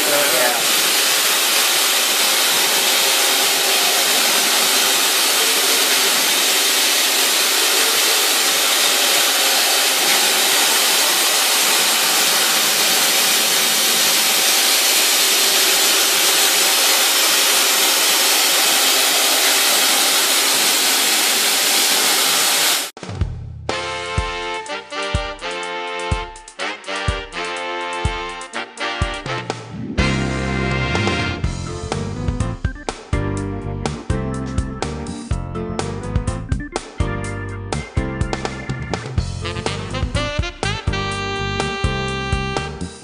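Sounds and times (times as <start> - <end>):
machining center running hiss: 0.0 - 22.9.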